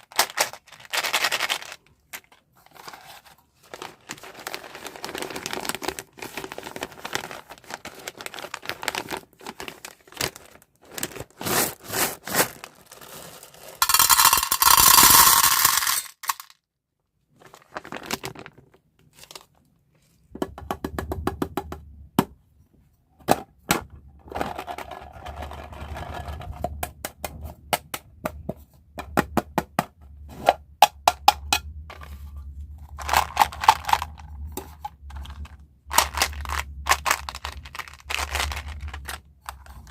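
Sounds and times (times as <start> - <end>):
plastic wrappers crinkling: 0.0 - 16.5, 17.4 - 19.6, 32.9 - 39.9
hard candies clicking: 13.8 - 16.5, 35.0 - 39.6.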